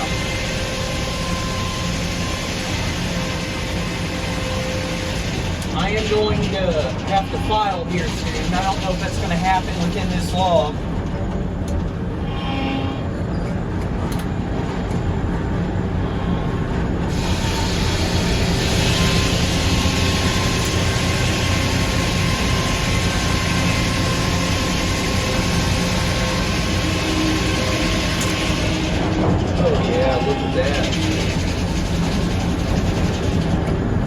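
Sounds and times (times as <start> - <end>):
saw cutting through log: 0.0 - 5.6, 17.1 - 29.2
steady saw whine: 0.0 - 10.9, 16.0 - 34.0
sawmill low rumble: 0.0 - 34.0.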